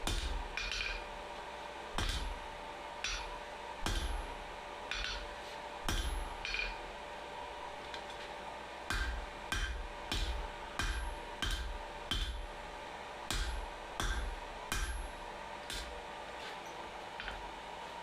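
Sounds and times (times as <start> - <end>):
hammer striking steel on anvil: 0.0 - 1.2, 2.0 - 6.9, 8.8 - 12.6, 13.3 - 16.1
faint steady hum: 0.0 - 18.0.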